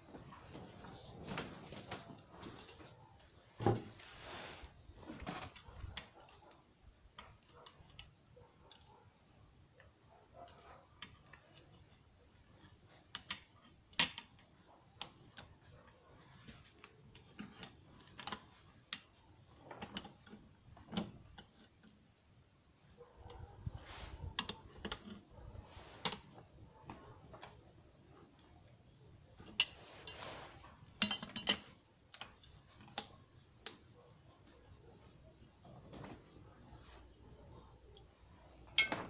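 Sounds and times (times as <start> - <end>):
metal tools clicking and tapping: 1.7 - 3.1, 5.5 - 9.0, 9.8 - 15.9, 16.8 - 22.0, 24.2 - 25.3, 26.0 - 26.4, 29.4 - 30.2, 30.8 - 34.8, 38.7 - 39.0.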